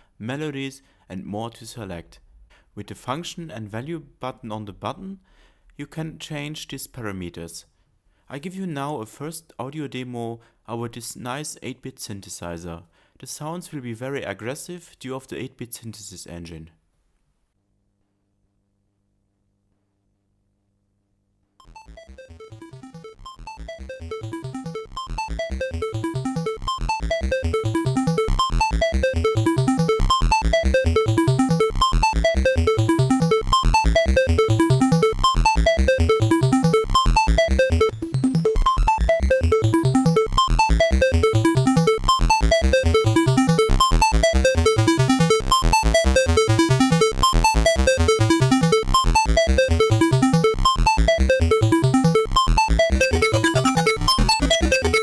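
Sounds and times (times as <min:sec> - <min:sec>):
buzzy chiptune synthesizer notes: 0:21.6 - 0:55.0
pulsing bass notes: 0:21.6 - 0:55.0.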